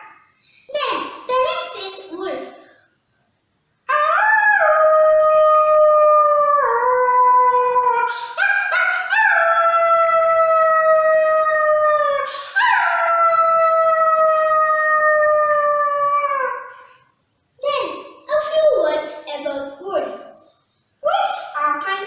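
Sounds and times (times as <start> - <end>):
child howling like a wolf: 3.9 - 16.8
child yipping: 3.9 - 16.8.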